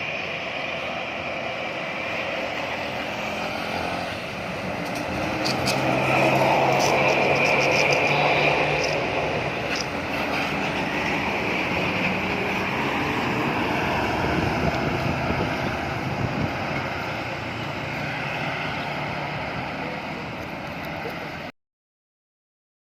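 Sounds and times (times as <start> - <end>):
bus engine and road noise: 0.0 - 21.5
wind rushing: 3.6 - 17.3.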